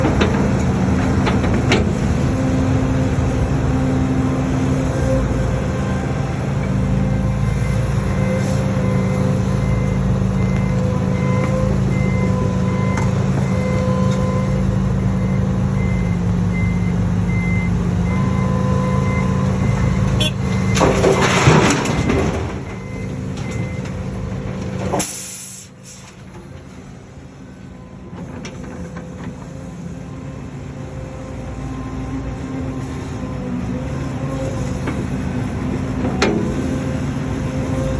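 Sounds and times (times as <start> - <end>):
excavator diesel engine droning: 0.0 - 37.9
short sharp hiss: 25.0 - 26.2.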